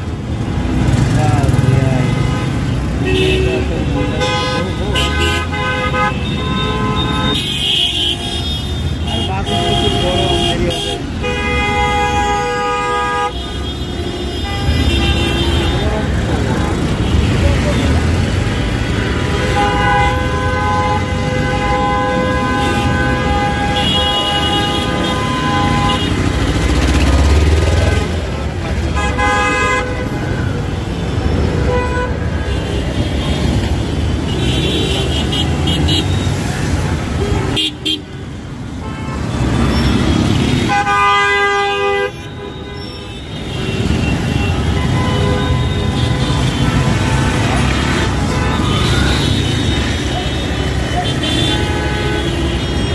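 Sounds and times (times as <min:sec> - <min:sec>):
engines rumbling: 0:00.0 - 0:52.9
loud vehicle horn: 0:02.0 - 0:16.1, 0:18.6 - 0:30.5, 0:31.3 - 0:52.9
higher car horn: 0:28.9 - 0:30.2, 0:37.2 - 0:52.9.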